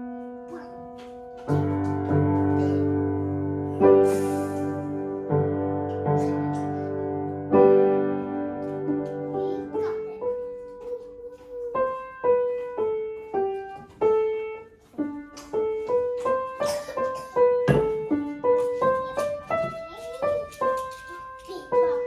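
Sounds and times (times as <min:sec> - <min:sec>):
child playing piano melody: 0:00.0 - 0:22.0.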